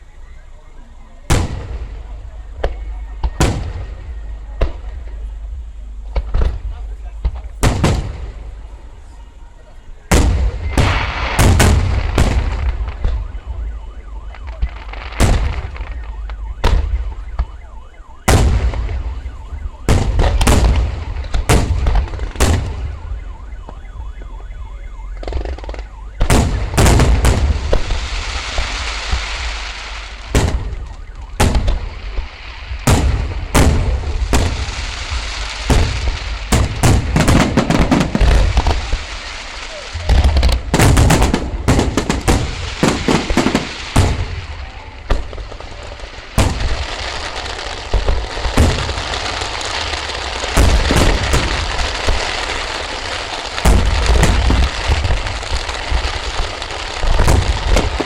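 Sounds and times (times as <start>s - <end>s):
firework crackling hiss: 0.9s - 13.5s, 26.4s - 58.0s
deep booming rumble: 1.2s - 52.5s.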